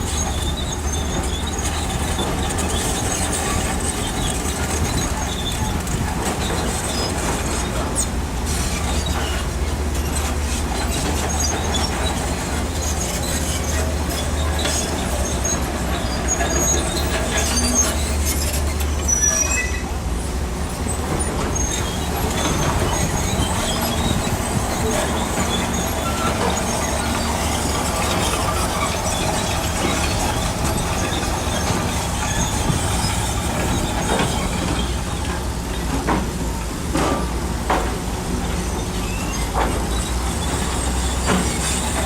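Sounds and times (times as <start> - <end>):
steel tracks clanking and squealing: 0.0 - 42.0
diesel engine droning: 19.8 - 42.0.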